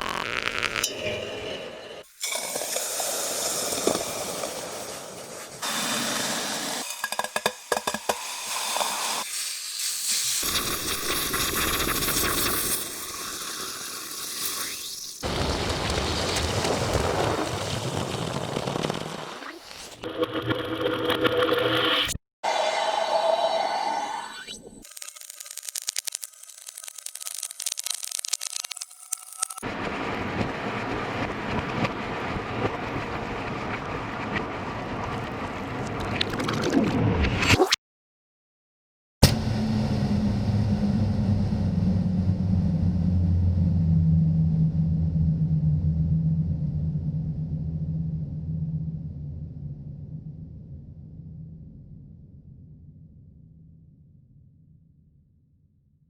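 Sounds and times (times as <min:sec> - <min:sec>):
crackles: 0:00.0 - 0:00.9, 0:10.4 - 0:21.7, 0:24.8 - 0:36.8
sharp crackles and chirps: 0:00.0 - 0:00.9, 0:14.0 - 0:20.1, 0:24.4 - 0:29.6
steam hissing and sizzling: 0:02.0 - 0:15.4.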